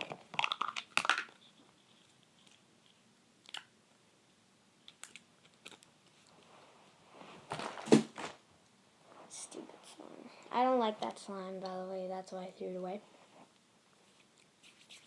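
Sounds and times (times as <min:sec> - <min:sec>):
rustling: 0:05.0 - 0:11.2.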